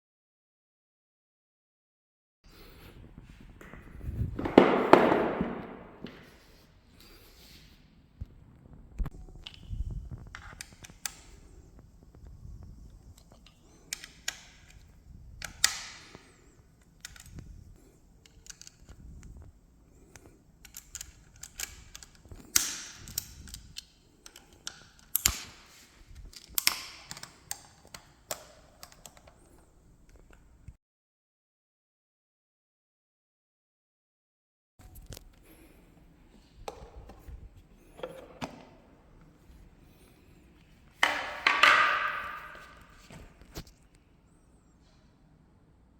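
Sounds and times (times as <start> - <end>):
chair parts and tools clattering: 3.6 - 6.6, 35.4 - 43.8.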